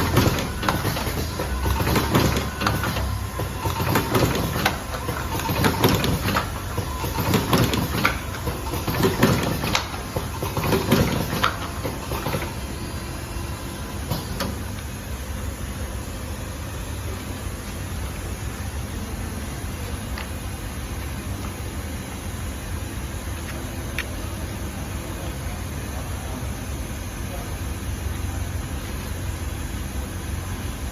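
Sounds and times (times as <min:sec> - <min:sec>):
rhythmic machine knocks: 0:00.0 - 0:12.8
steady mechanical noise: 0:00.0 - 0:30.9.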